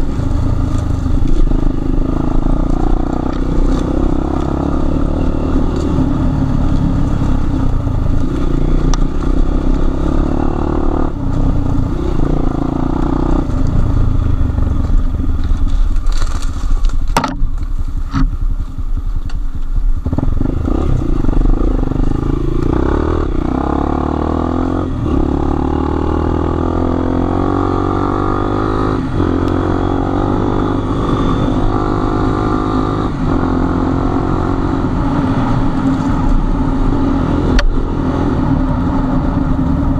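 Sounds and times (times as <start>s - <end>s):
motorcycle engine revving: 0.0s - 19.0s, 19.9s - 39.9s
sharp knock: 17.2s - 17.5s.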